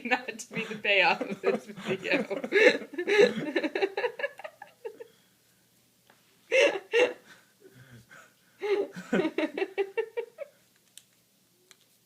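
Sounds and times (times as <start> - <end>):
person laughing: 0.5 - 5.1, 6.5 - 7.2, 8.6 - 10.5.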